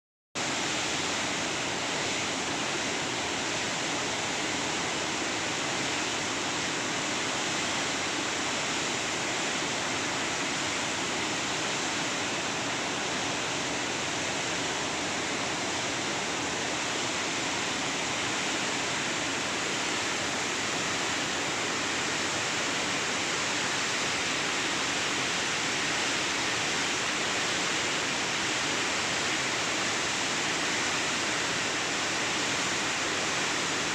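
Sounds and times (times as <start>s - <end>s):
water roaring through spillway: 0.4s - 33.9s.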